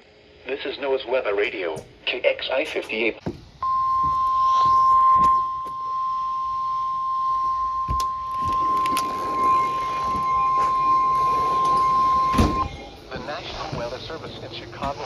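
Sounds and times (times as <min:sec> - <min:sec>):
steady alarm beep: 0:03.3 - 0:15.0
clicks: 0:07.4 - 0:15.0
faint radio hiss: 0:09.2 - 0:15.0.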